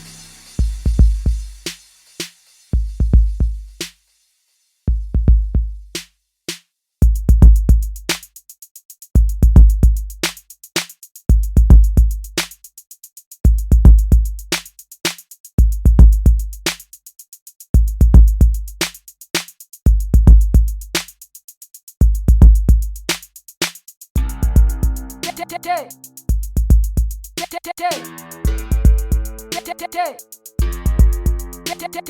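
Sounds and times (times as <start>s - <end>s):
log drum bass hits: 0.0s - 1.8s, 2.8s - 3.8s, 4.9s - 6.0s, 7.0s - 8.2s, 9.2s - 10.4s, 11.3s - 12.4s, 13.5s - 14.6s, 15.6s - 16.5s, 17.8s - 18.7s, 19.9s - 20.8s, 22.0s - 23.0s, 24.2s - 25.4s, 26.3s - 27.4s, 28.5s - 29.6s, 30.6s - 31.7s
sharp percussion hits: 0.0s - 3.8s, 24.2s - 32.0s
hi-hat ticks: 0.0s - 5.2s, 5.8s - 32.0s.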